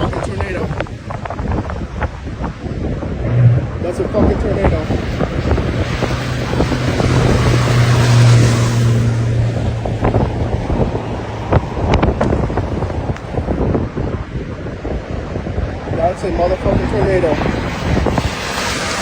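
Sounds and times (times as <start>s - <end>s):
wind buffeting microphone: 0.0s - 19.0s
low hum: 3.0s - 13.5s.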